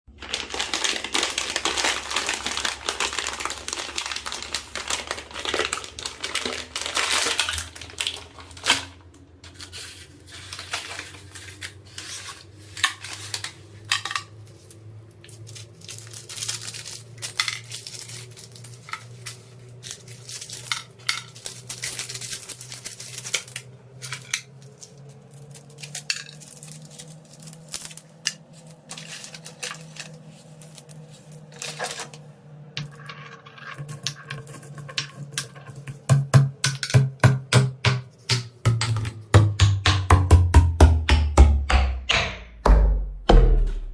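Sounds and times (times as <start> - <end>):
pestle tapping bowl: 35.8 - 43.7
pestle crunching in mortar: 35.9 - 43.9
pestle knock: 36.1 - 43.9.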